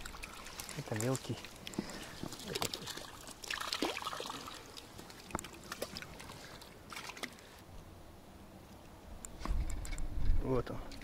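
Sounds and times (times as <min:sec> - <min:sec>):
river water trickling: 0:00.0 - 0:10.0
small clicks and ticks: 0:08.7 - 0:10.1.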